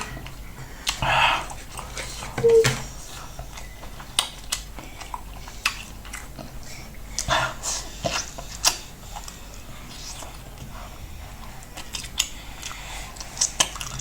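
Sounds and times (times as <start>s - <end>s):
wet chewing and lip smacks: 11.7s - 14.0s.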